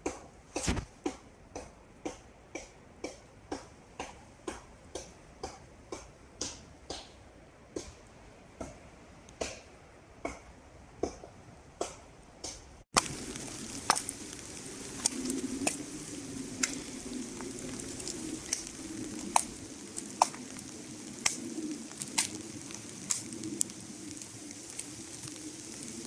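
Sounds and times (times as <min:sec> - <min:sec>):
wood fire crackling and popping: 0:00.6 - 0:01.0, 0:12.4 - 0:26.0
steady hiss: 0:13.0 - 0:26.0.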